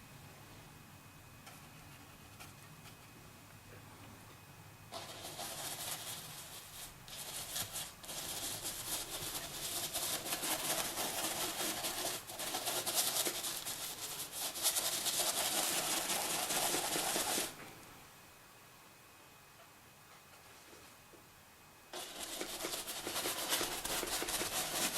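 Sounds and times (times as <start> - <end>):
paintbrush scrubbing on canvas: 4.9 - 17.6, 22.0 - 24.9.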